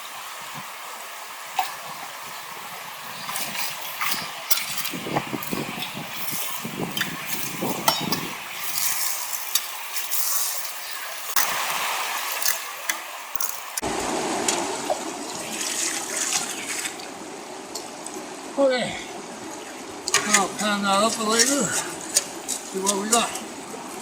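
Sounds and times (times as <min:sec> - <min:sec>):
water splashing through sluice box: 0:00.0 - 0:17.3
stones clinking against metal: 0:03.5 - 0:11.6, 0:12.3 - 0:13.8.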